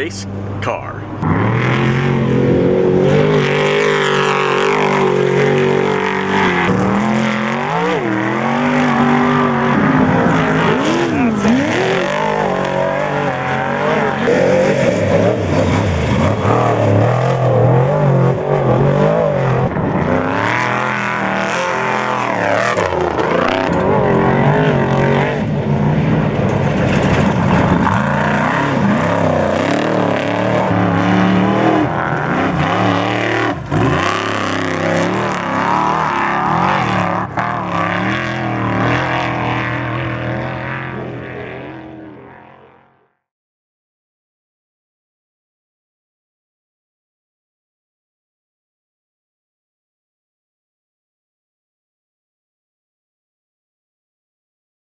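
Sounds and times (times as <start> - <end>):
truck engines revving: 0.0 - 42.7.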